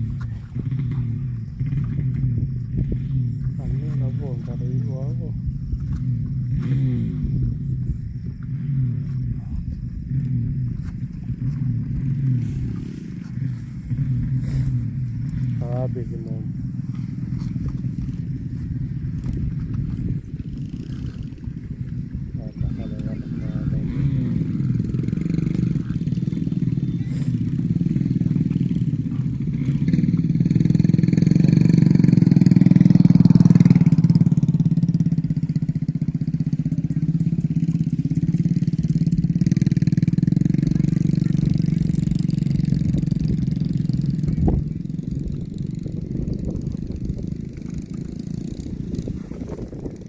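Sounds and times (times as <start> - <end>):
engine running: 0.0 - 50.0.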